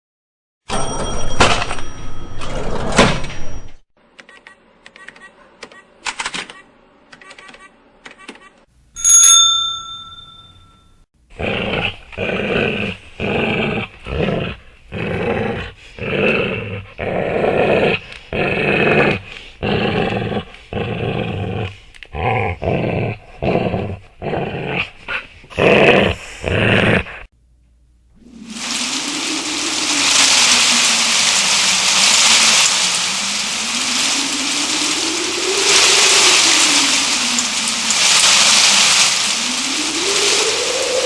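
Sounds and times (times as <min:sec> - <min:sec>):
dog growling: 0:11.3 - 0:27.3.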